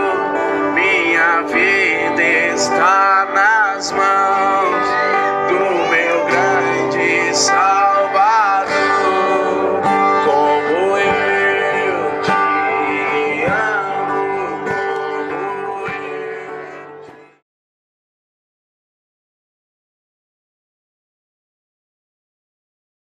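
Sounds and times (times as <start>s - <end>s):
guitar music with singing: 0.0s - 17.4s.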